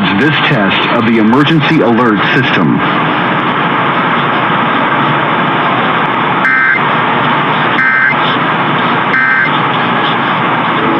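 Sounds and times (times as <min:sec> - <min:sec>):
radio static hiss: 0:00.0 - 0:10.9
two-tone digital data bursts: 0:06.4 - 0:06.8, 0:07.8 - 0:08.2, 0:09.1 - 0:09.5.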